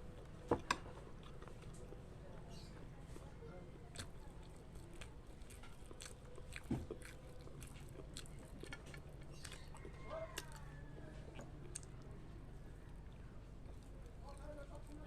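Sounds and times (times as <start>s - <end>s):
person biting and chewing: 3.9s - 10.6s, 11.2s - 12.0s.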